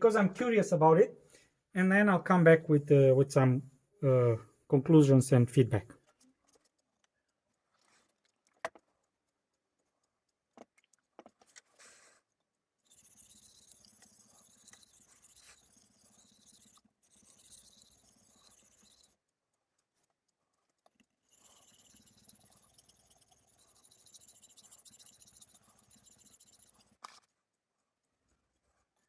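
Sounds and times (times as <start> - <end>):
knife scraping on whetstone: 12.9 - 19.2, 21.3 - 27.2.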